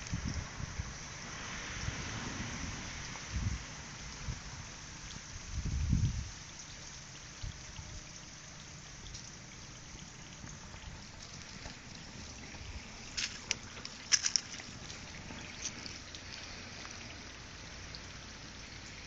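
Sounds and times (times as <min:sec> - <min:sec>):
wind buffeting microphone: 0:00.0 - 0:01.1, 0:01.7 - 0:06.4
outdoor hiss: 0:00.0 - 0:19.0.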